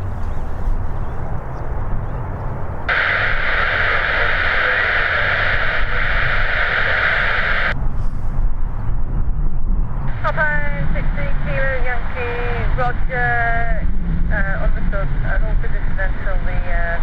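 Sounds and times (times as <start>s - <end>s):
steady low rumble: 0.0s - 17.0s
radio static hiss: 2.8s - 7.8s, 10.1s - 17.0s.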